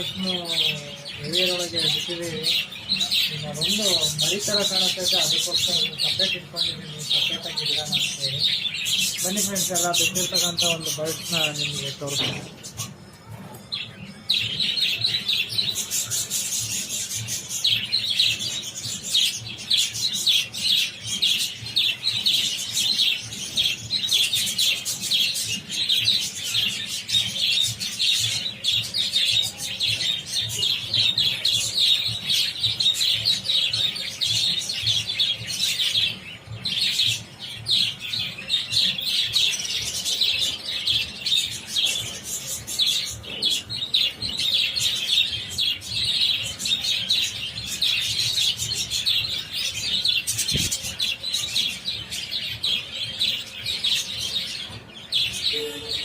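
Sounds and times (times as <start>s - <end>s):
budgerigars chattering: 0.0s - 56.0s.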